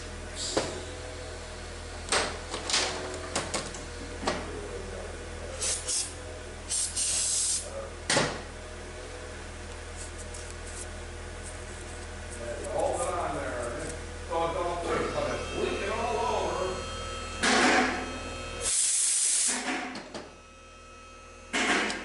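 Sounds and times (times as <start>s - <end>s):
steady low hum: 0.0s - 22.0s
short hissing bursts: 6.7s - 7.6s.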